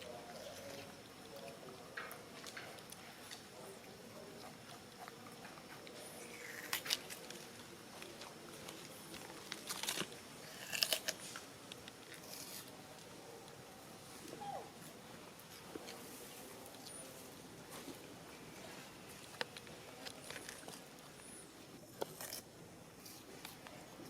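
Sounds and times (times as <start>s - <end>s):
monkeys crunching food: 0.0s - 13.6s, 14.2s - 24.0s.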